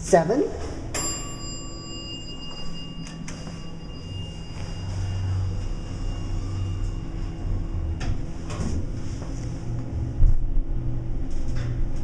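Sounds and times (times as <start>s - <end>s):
elevator car humming: 0.6s - 12.0s
sweeping scrape: 3.3s - 9.7s.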